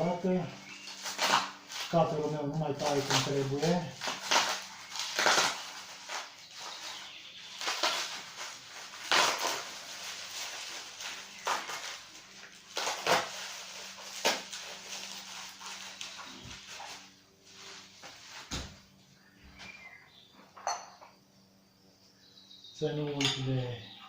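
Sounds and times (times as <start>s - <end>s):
knife cutting packaging: 0.6s - 17.2s
packaging rustling: 0.6s - 18.6s.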